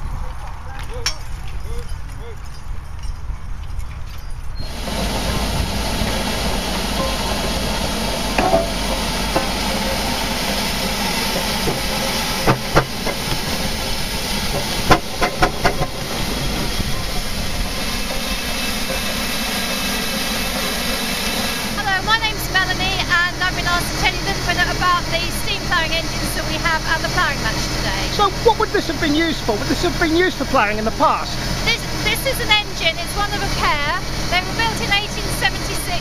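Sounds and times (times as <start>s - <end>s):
steam engine hissing: 4.6s - 36.0s
metallic knocks and clanks: 6.9s - 17.3s.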